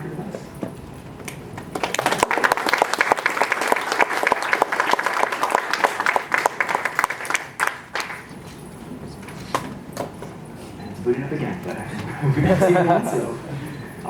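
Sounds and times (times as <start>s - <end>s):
audience applauding: 1.6s - 8.4s.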